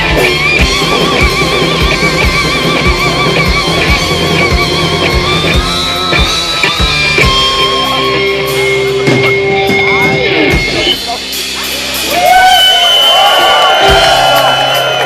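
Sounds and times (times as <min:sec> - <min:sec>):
electric guitar vibrato notes: 0:00.0 - 0:12.0.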